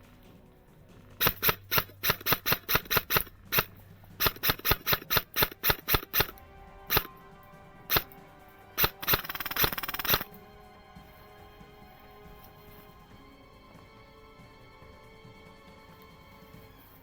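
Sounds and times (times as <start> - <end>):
airsoft rifle shots: 1.2 - 7.2, 7.9 - 8.2, 8.8 - 10.4.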